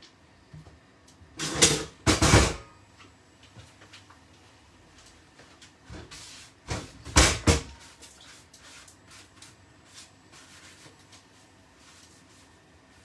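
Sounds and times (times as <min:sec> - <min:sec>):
sharp kitchen knocks: 0:07.1 - 0:07.8.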